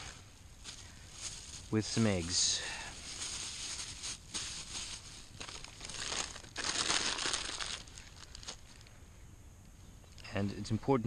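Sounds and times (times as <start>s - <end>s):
plastic wrapping crinkling: 0.6s - 2.4s, 3.0s - 8.9s.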